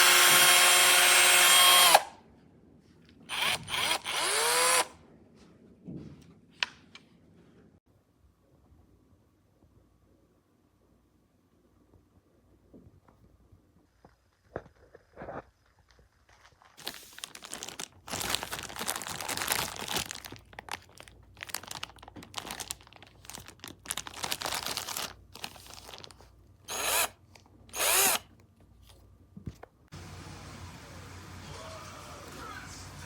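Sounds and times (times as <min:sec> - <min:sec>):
cordless drill running: 0:00.0 - 0:02.2, 0:03.3 - 0:04.9, 0:26.7 - 0:28.2.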